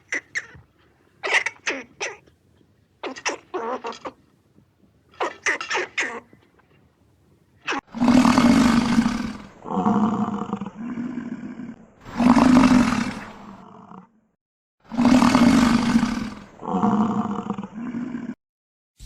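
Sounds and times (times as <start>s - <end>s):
large animal roaring: 7.8s - 14.2s, 14.9s - 18.4s.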